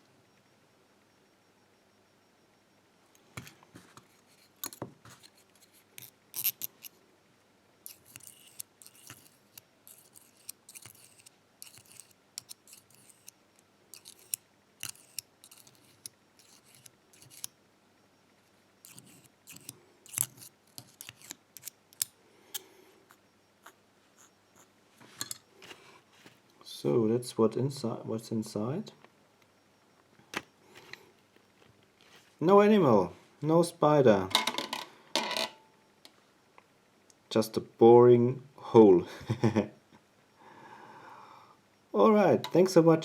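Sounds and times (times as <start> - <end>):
metal scraping: 7.8 - 13.3.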